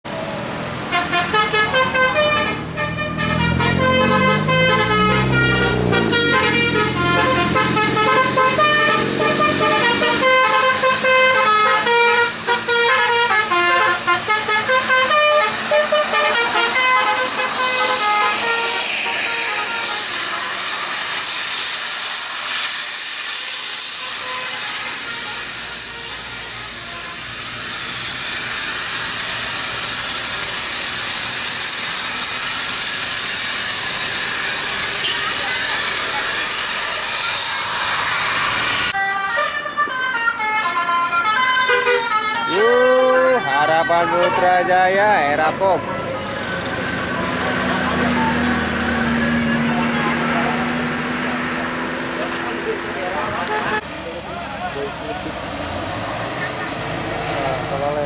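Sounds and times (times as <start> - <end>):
musical bus horn playing a tune: 0.8 - 28.2, 34.2 - 37.5, 38.2 - 52.0, 53.4 - 53.9
long air hiss: 10.6 - 39.0.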